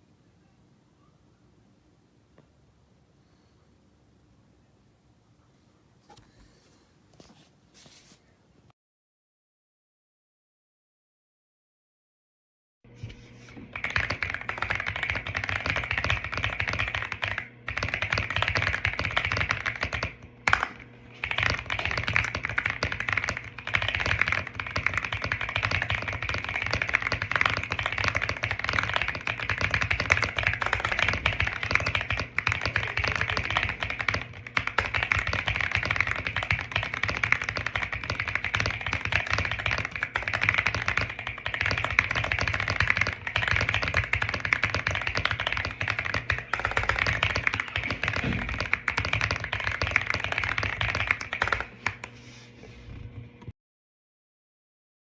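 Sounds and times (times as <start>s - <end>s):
mechanical keyboard typing: 13.7s - 52.0s.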